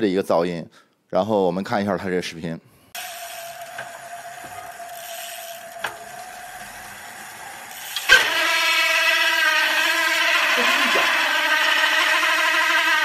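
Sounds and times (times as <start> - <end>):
freehub spinning whine: 2.9 - 13.0
sharp steady squeal: 2.9 - 13.0.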